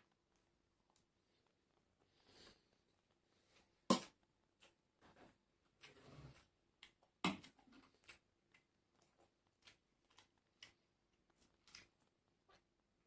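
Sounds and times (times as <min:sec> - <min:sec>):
person chewing food: 0:05.8 - 0:12.8.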